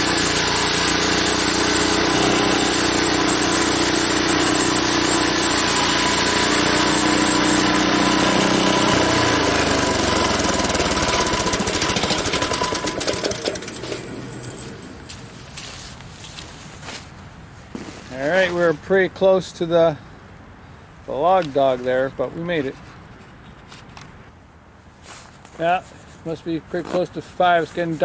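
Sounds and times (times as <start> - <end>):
sawmill engine cutting log: 0.0 - 15.3.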